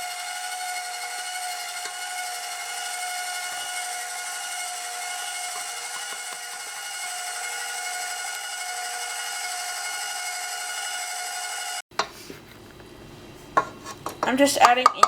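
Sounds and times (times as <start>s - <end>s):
electric mixer whining: 0.0s - 11.8s.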